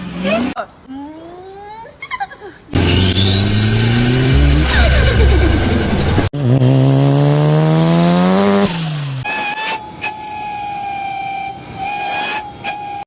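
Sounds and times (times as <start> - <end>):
car engines accelerating hard: 2.7 - 9.2.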